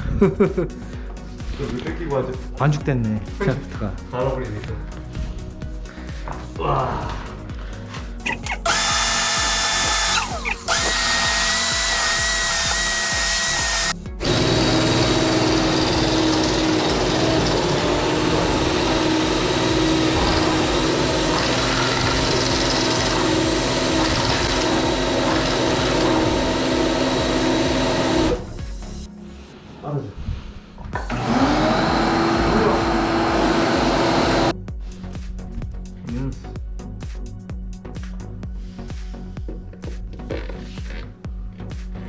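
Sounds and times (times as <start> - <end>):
shaft grinding through grease: 8.3 - 28.4
drain-cleaning machine motor whine: 8.7 - 28.5, 31.0 - 34.5.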